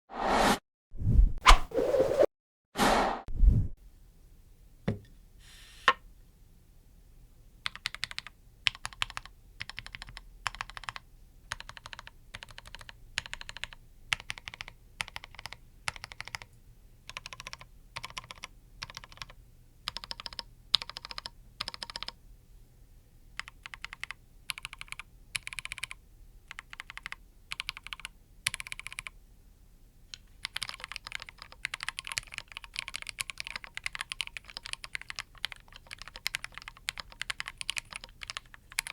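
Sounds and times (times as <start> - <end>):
mechanical keyboard typing: 7.6 - 16.5, 17.1 - 22.2, 23.4 - 29.1, 30.1 - 38.9.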